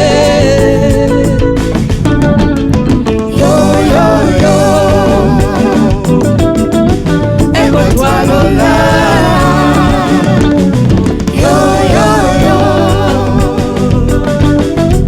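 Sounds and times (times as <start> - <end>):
band playing: 0.0 - 15.0
person singing wavering phrases: 3.3 - 6.4, 7.6 - 10.7, 11.3 - 14.7.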